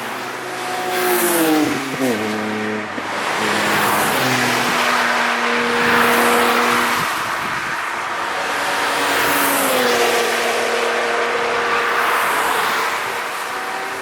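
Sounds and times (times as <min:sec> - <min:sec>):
race cars passing at speed: 0:00.0 - 0:14.0
tyre and wind noise: 0:02.9 - 0:10.0.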